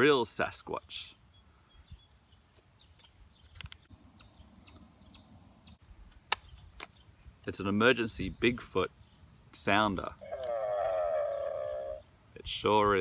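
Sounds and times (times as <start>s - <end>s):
insect chirring: 0.1s - 13.0s
sharp click: 6.2s - 6.9s.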